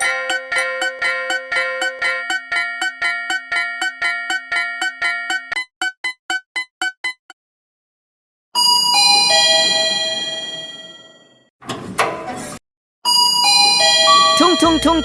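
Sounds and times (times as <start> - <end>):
descending electronic chime: 0.0 - 7.3.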